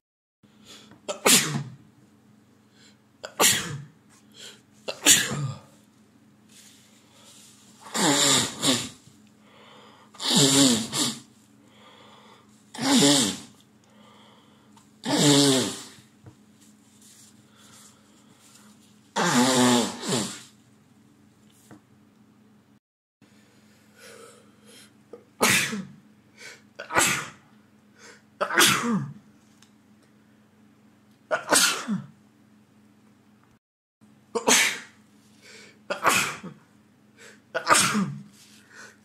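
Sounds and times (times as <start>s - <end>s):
man sneezing: 1.1s - 1.8s, 3.2s - 3.9s, 4.9s - 5.8s, 7.8s - 9.0s, 10.2s - 11.3s, 12.8s - 13.5s, 15.0s - 16.0s, 19.2s - 20.5s, 25.4s - 26.0s, 26.8s - 27.4s, 28.4s - 29.2s, 34.4s - 35.0s, 35.9s - 36.6s, 37.5s - 38.3s.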